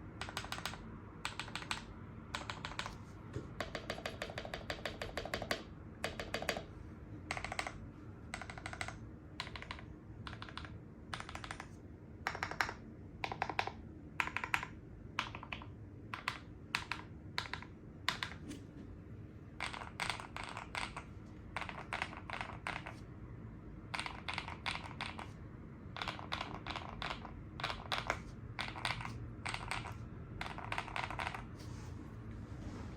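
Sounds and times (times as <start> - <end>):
mechanical keyboard typing: 0.0 - 18.5, 19.6 - 23.0, 23.9 - 31.6.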